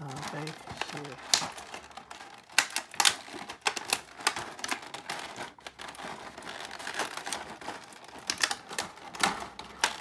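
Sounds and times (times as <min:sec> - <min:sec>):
packaging crinkling: 0:00.0 - 0:10.0
sharp clicks of plastic parts: 0:00.0 - 0:10.0.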